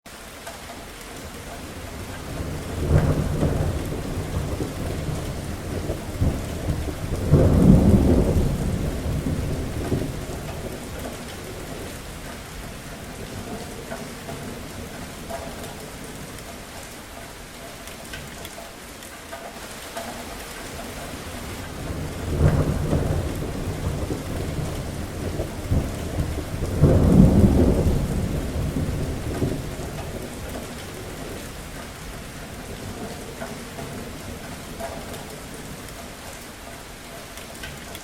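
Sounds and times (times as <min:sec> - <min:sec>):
steady rain falling: 0:00.1 - 0:38.0
thunder rolling: 0:01.6 - 0:16.3, 0:20.2 - 0:35.9.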